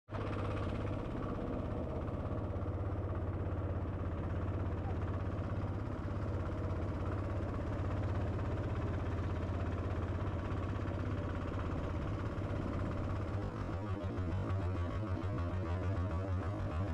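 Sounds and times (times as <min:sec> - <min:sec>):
engine running steadily: 0:00.1 - 0:16.9.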